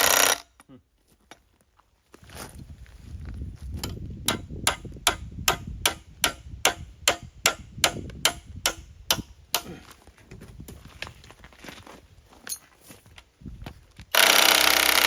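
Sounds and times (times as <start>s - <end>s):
hammer striking metal: 4.3s - 9.8s.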